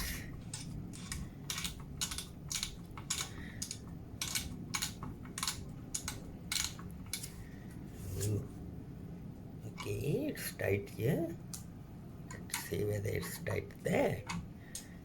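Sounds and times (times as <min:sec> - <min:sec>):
screwdriver clicking: 0:00.0 - 0:07.3.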